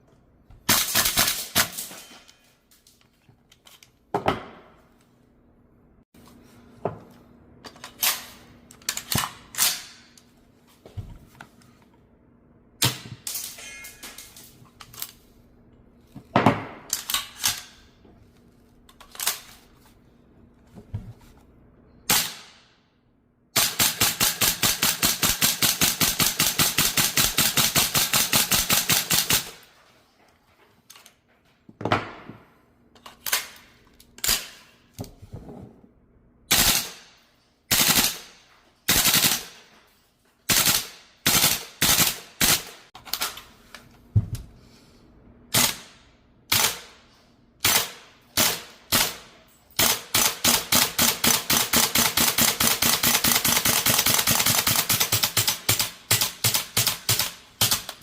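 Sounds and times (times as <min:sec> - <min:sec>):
airsoft rifle firing: 0:36.5 - 0:37.1, 0:37.7 - 0:39.6.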